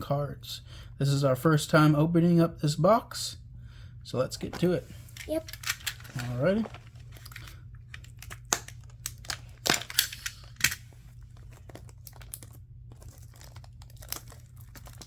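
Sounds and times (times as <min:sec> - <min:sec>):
plastic wrap crinkling and tearing: 0:05.7 - 0:15.0.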